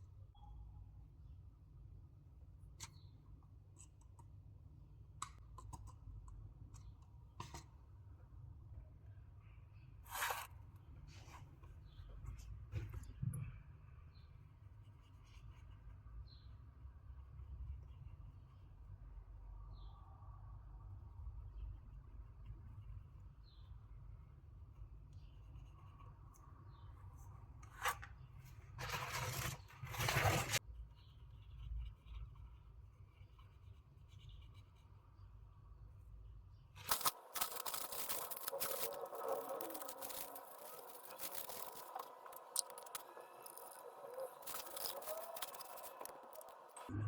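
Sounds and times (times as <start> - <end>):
scraping: 28.7 - 30.6, 36.8 - 46.9
rubbing noises: 28.7 - 35.0, 36.8 - 46.9.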